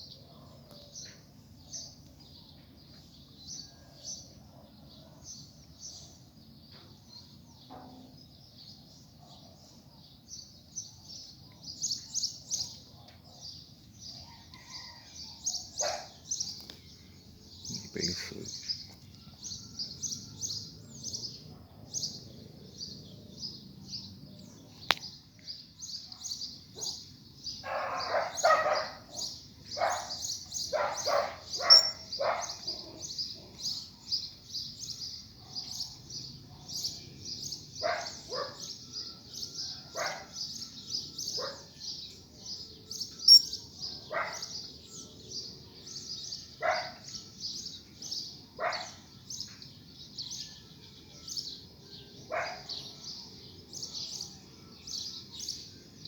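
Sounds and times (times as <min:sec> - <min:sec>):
small birds chirping: 0:00.0 - 0:56.0
lower short bird calls: 0:31.0 - 0:32.2.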